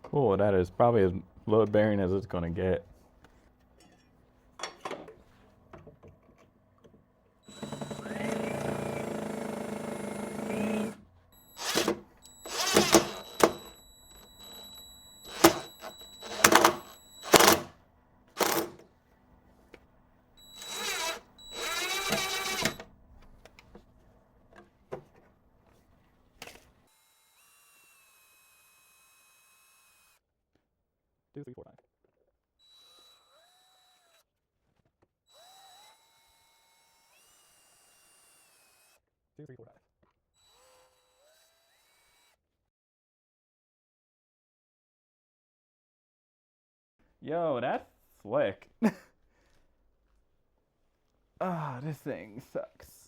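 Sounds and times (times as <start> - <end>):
cordless drill driving screws: 7.5 - 17.8, 18.4 - 18.8, 20.4 - 22.9, 26.4 - 30.2, 32.6 - 34.2, 35.3 - 39.0, 40.4 - 42.4.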